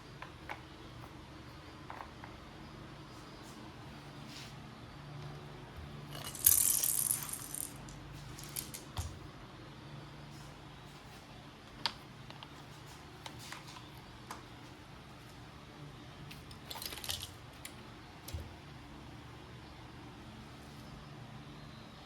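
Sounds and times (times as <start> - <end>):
small hard objects clattering: 6.1 - 9.2, 16.6 - 17.4.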